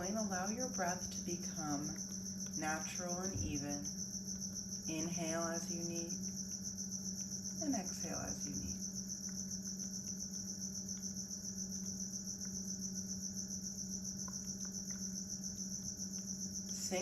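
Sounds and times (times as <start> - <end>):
crickets chirping: 0.0 - 17.0
steady low hum: 0.0 - 17.0.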